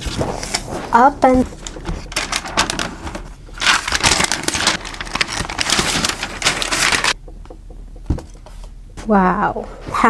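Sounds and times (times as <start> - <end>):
packaging crackling and tearing: 1.5 - 7.2.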